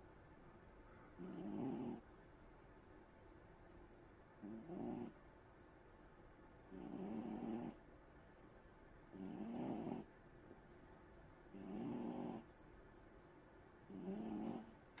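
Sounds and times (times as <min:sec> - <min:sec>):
cat snoring: 0:01.2 - 0:02.0, 0:04.4 - 0:05.2, 0:06.7 - 0:07.8, 0:09.1 - 0:10.1, 0:11.5 - 0:12.5, 0:13.9 - 0:14.8.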